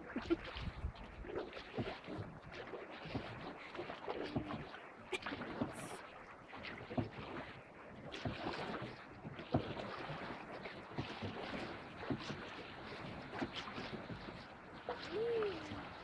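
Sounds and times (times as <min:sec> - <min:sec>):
water splashing around canoe: 0:00.0 - 0:16.0
paddle strokes knocking: 0:08.2 - 0:14.4.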